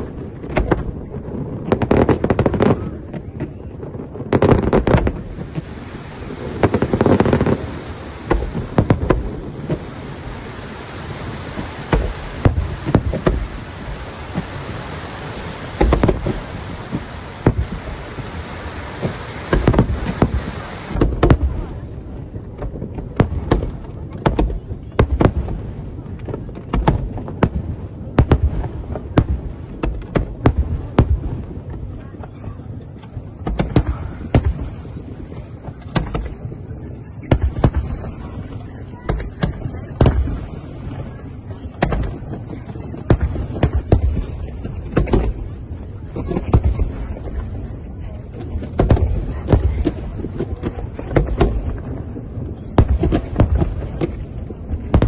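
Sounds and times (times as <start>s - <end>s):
steady hiss: 3.9s - 21.8s.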